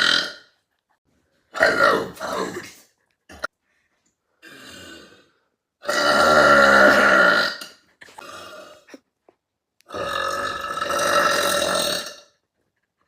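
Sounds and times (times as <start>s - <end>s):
girl burping loudly: 0.0s - 0.4s, 4.4s - 9.0s, 9.9s - 12.3s.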